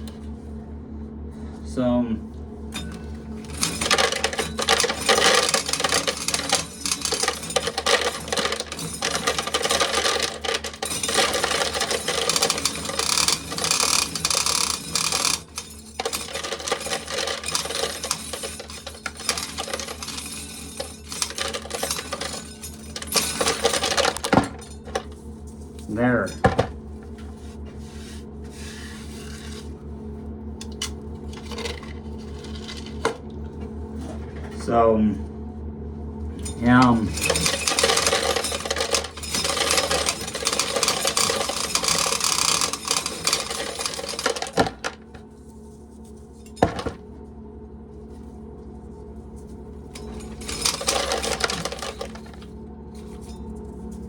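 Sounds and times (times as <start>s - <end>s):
steady hum: 0.0s - 54.0s
corn kernels clattering into pail: 3.5s - 25.0s, 37.2s - 45.0s.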